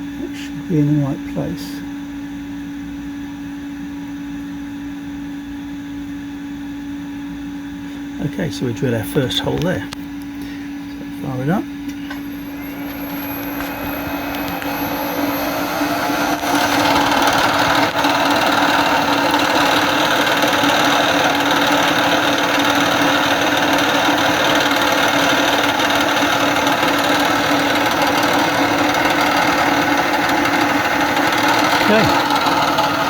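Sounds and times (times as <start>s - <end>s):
milling machine spindle whine: 8.2s - 33.0s.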